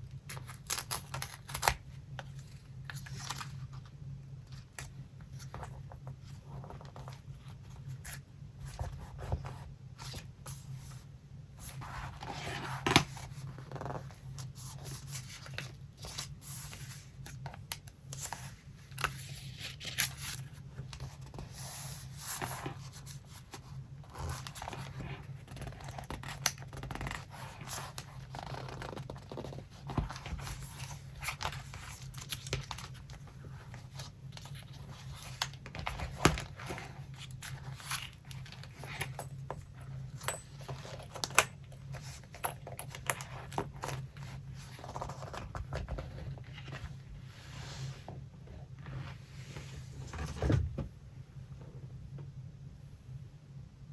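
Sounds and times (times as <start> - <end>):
paper rustling and sliding: 43.8 - 48.2.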